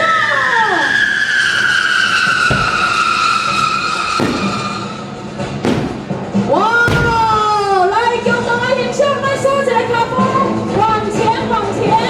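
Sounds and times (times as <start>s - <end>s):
firework whistle descending: 0.0s - 5.8s
firework bangs: 1.6s - 8.2s.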